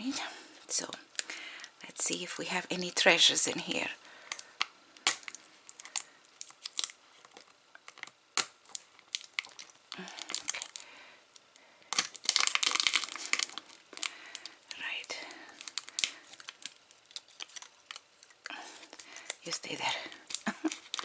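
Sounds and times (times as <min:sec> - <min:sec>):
tape peeling and crinkling: 0:04.3 - 0:21.0.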